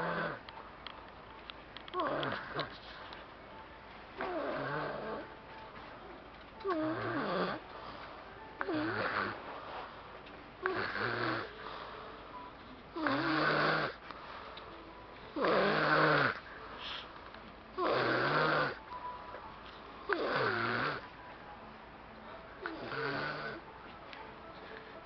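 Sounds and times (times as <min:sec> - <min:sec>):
person snoring: 0:00.0 - 0:00.4, 0:02.0 - 0:02.8, 0:04.2 - 0:05.3, 0:06.6 - 0:07.6, 0:08.6 - 0:09.4, 0:10.6 - 0:12.0, 0:13.0 - 0:14.0, 0:15.3 - 0:16.4, 0:17.8 - 0:18.8, 0:20.0 - 0:21.0, 0:22.6 - 0:23.6.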